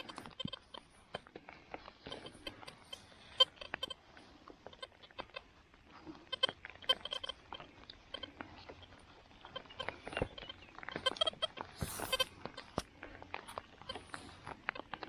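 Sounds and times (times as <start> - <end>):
metal detector signal tones: 6.1 - 12.3.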